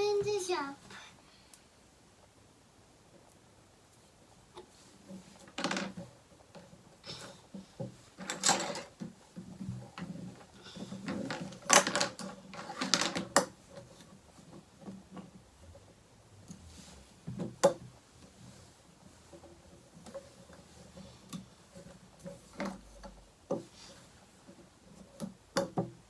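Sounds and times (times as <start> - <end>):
plastic toys clicking and clattering: 5.1 - 15.4.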